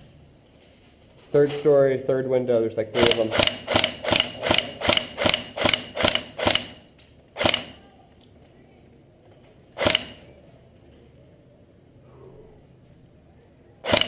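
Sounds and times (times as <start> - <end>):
airsoft gun shots: 3.0 - 7.8, 9.8 - 10.3.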